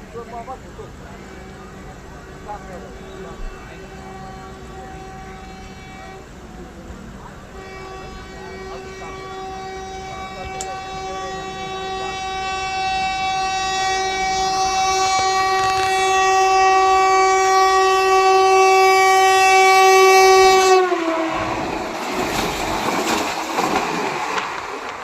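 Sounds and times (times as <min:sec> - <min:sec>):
train horn blast: 0:01.0 - 0:06.9, 0:07.5 - 0:24.5
train coaches clattering on rails: 0:21.4 - 0:25.0.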